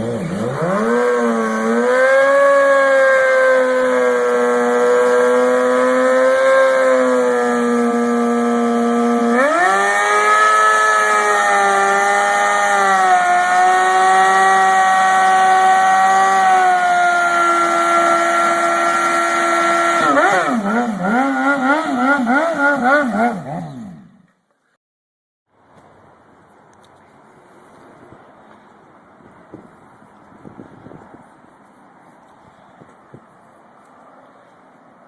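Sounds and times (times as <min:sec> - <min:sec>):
motorcycle engine revving: 0:00.0 - 0:24.4.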